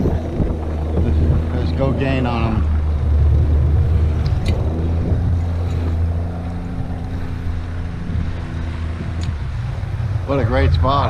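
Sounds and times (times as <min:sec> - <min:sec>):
boat motor droning: 0:00.0 - 0:11.0.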